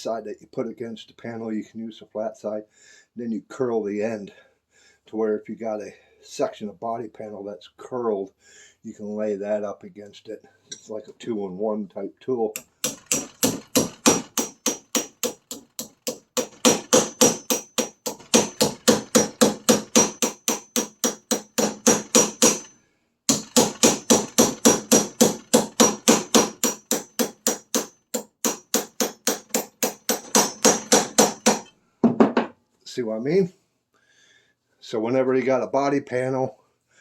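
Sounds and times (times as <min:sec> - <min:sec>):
hammer blows on copper: 0:12.6 - 0:22.7, 0:23.3 - 0:31.7.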